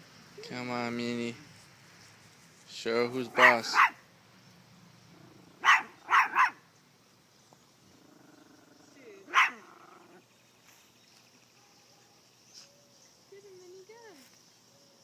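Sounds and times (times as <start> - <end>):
small dog barking: 3.2 - 4.0, 5.6 - 6.6, 9.3 - 10.2
dog growling: 7.9 - 10.2.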